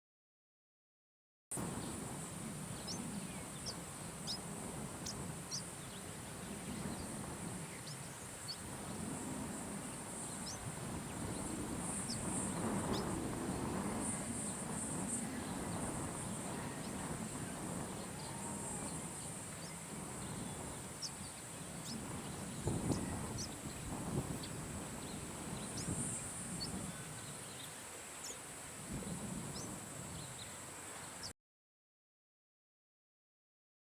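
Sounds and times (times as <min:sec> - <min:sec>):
high insect buzz: 0:01.7 - 0:31.3
bird chirps: 0:18.0 - 0:28.4.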